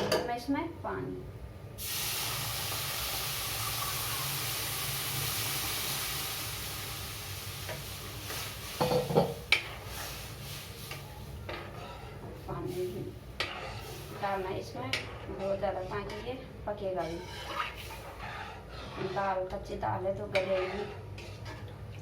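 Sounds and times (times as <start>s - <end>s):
water sizzling in hot oil: 1.8s - 11.8s, 12.4s - 15.3s, 17.2s - 18.5s.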